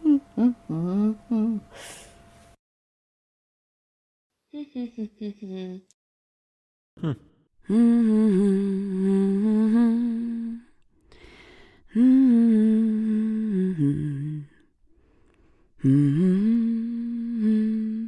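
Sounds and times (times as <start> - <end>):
woman humming: 0.0 - 2.1, 4.5 - 6.0, 7.0 - 10.8, 11.9 - 14.6, 15.8 - 18.0.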